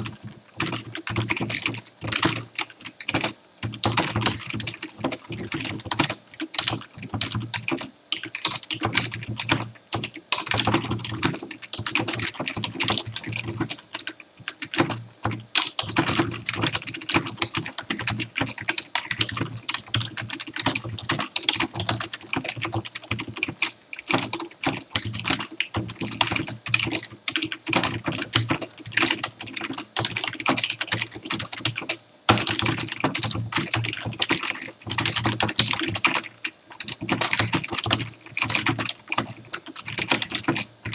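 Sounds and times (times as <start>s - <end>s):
fast typing on keyboard: 0.0s - 40.9s.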